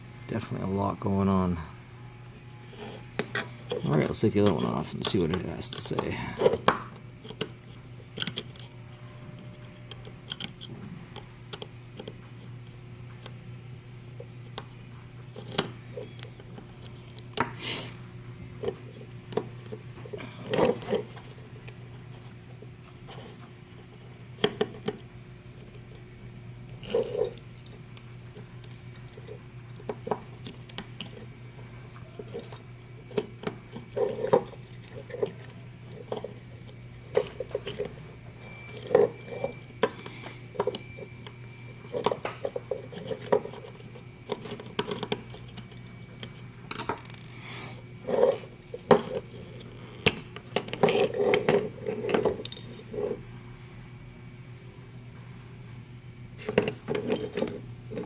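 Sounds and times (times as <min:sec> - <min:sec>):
steady low hum: 0:00.0 - 0:58.0
small parts and tools clinking: 0:32.0 - 0:47.4, 0:48.0 - 0:53.2.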